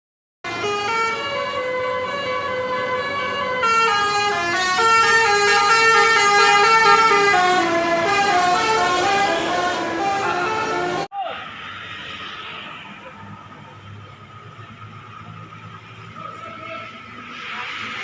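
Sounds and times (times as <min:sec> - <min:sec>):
bus horn melody: 0:00.4 - 0:11.1.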